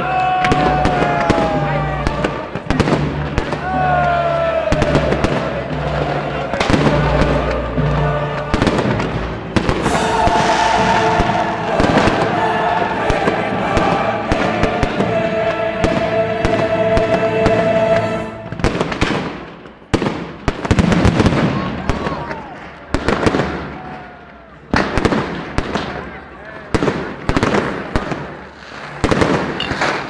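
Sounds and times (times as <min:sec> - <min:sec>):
recorded music: 0:00.0 - 0:19.6
fireworks bangs and crackles: 0:00.4 - 0:17.7, 0:18.4 - 0:30.0.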